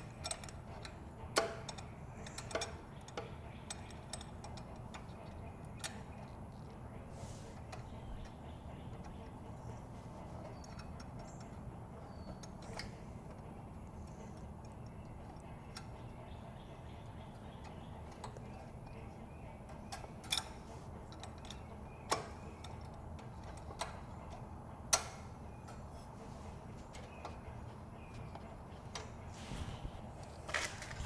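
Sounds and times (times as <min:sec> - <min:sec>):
hand tools clicking on metal parts: 0:00.0 - 0:06.7, 0:10.4 - 0:16.2, 0:17.0 - 0:26.0
low background hum: 0:00.0 - 0:31.0.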